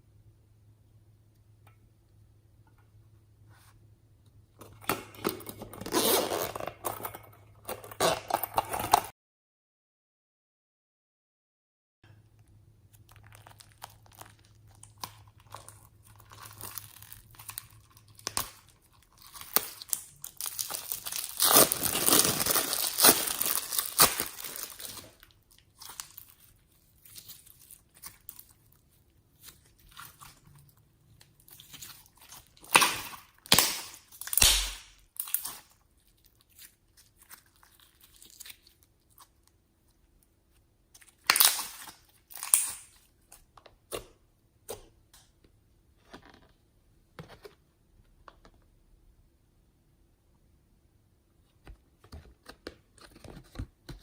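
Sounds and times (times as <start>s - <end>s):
small clicks and crinkles: 12.3s - 32.7s
slime crackling and crunching: 12.9s - 39.4s, 40.9s - 43.2s.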